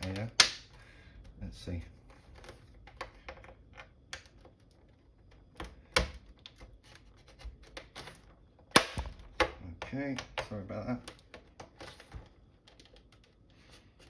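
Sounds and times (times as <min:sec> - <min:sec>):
plastic clicks and creaks: 0:00.0 - 0:00.4
sharp plastic snap: 0:00.0 - 0:00.7, 0:08.7 - 0:09.6.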